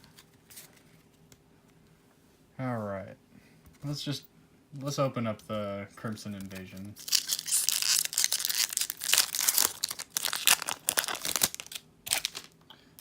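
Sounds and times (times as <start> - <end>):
foil wrapper tearing and crinkling: 6.6 - 12.6.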